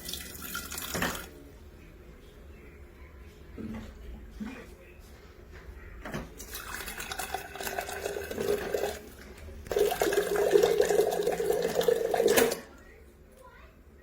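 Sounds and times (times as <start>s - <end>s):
water running from dispenser tap: 0.0s - 1.4s, 6.4s - 12.7s.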